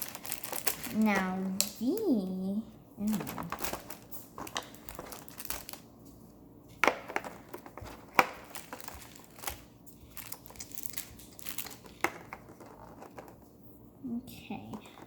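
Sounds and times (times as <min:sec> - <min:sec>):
plastic packaging crinkling: 0:00.0 - 0:02.2, 0:03.0 - 0:06.1, 0:06.8 - 0:13.4.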